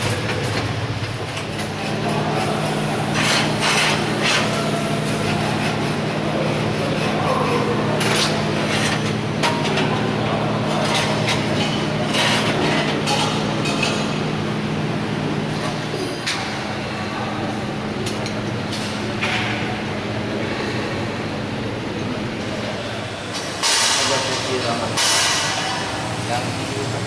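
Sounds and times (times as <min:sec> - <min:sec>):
noisy clatter: 0:00.0 - 0:16.8
steady electrical hum: 0:00.0 - 0:27.0.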